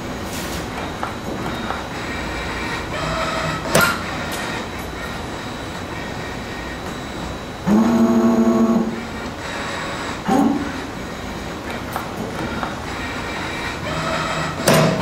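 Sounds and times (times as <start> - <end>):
loud pitched hum: 0.0 - 15.0
spring machine clattering: 13.8 - 15.0.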